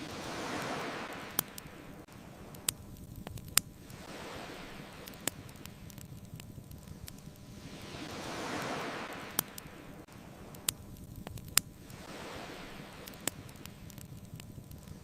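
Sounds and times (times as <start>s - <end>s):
bonfire crackling and popping: 0.0s - 15.0s
ocean waves washing in: 0.0s - 15.0s.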